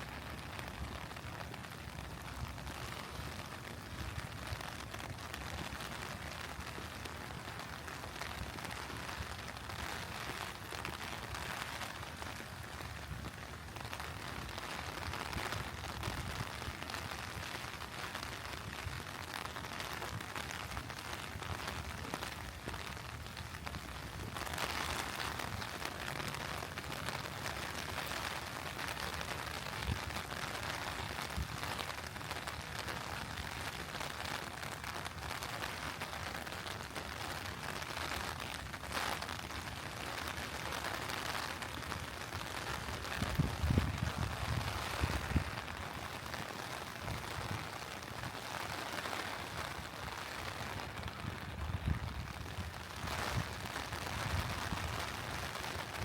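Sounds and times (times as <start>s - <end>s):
rain falling: 0.0s - 56.0s.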